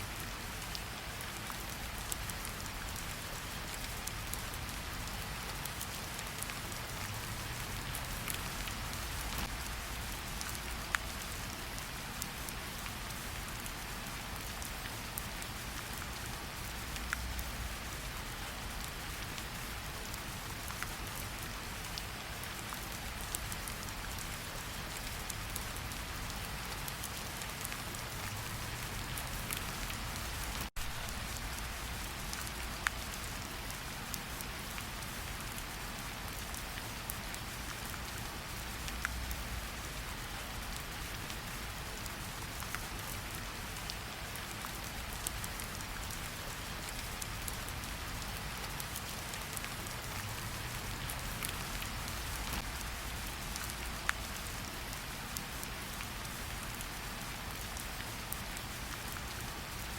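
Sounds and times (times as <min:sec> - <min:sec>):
steady rain: 0:00.0 - 0:59.9
raindrops ticking: 0:06.5 - 0:11.4, 0:19.9 - 0:34.4, 0:42.2 - 0:56.4.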